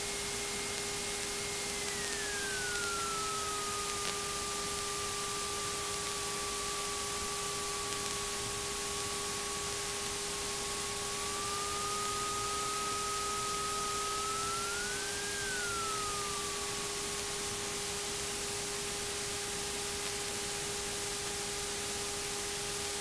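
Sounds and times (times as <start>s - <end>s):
constant hum tone: 0.0s - 23.0s
thin whistle: 0.4s - 18.4s
radio static hiss: 1.4s - 17.7s.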